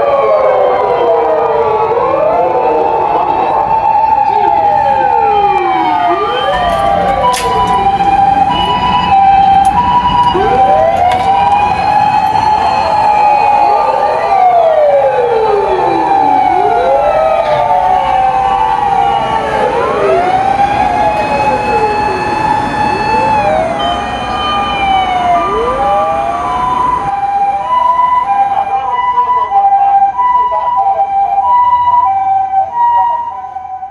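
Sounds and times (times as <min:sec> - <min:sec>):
fast two-tone siren: 0:00.0 - 0:33.9
wailing sirens: 0:00.0 - 0:33.9.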